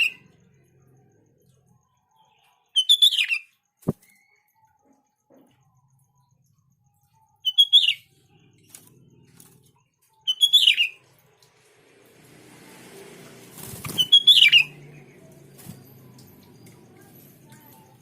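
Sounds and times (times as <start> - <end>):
bird chirping calls: 0.0 - 0.6, 1.4 - 5.6, 6.9 - 11.2, 13.6 - 18.0.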